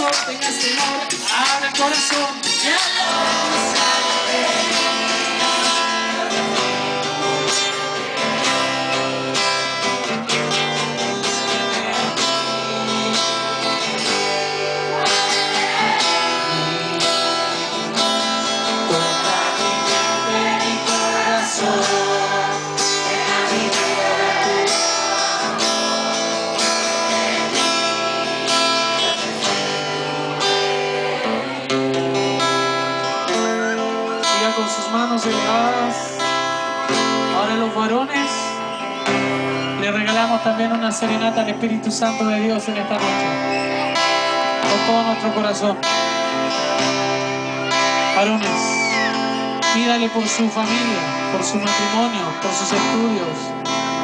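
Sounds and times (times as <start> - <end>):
strummed guitar: 0.0 - 54.0
person singing: 14.8 - 17.5, 18.8 - 26.1, 33.4 - 36.1.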